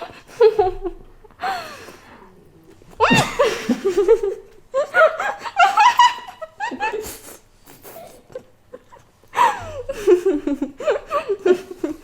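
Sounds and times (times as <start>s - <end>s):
woman laughing: 3.0s - 7.1s.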